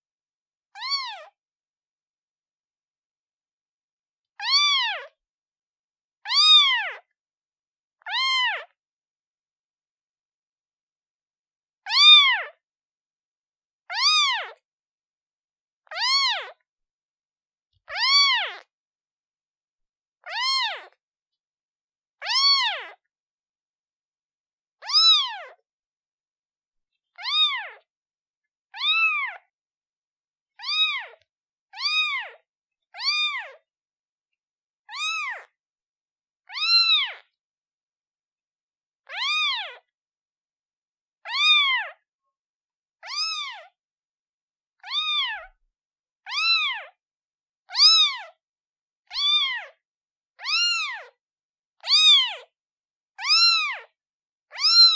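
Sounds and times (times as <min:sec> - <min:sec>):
kitten meowing: 0:00.8 - 0:01.3, 0:04.4 - 0:05.1, 0:06.2 - 0:07.0, 0:08.0 - 0:08.8, 0:11.9 - 0:12.5, 0:13.9 - 0:14.6, 0:15.9 - 0:16.6, 0:17.9 - 0:18.7, 0:20.2 - 0:21.0, 0:22.2 - 0:23.0, 0:24.8 - 0:25.6, 0:27.2 - 0:27.8, 0:28.8 - 0:29.5, 0:30.6 - 0:32.4, 0:33.0 - 0:33.6, 0:34.9 - 0:35.5, 0:36.5 - 0:37.2, 0:39.1 - 0:39.9, 0:41.3 - 0:42.0, 0:43.0 - 0:43.7, 0:44.8 - 0:45.6, 0:46.3 - 0:47.0, 0:47.7 - 0:48.4, 0:49.1 - 0:49.8, 0:50.4 - 0:51.2, 0:51.8 - 0:52.5, 0:53.2 - 0:53.9, 0:54.5 - 0:54.9.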